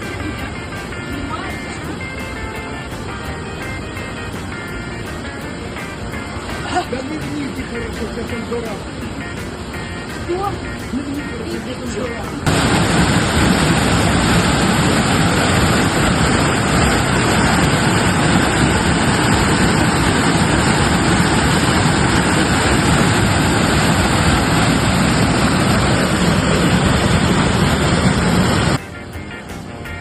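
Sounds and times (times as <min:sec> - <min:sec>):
river water rushing: 0:12.4 - 0:28.8.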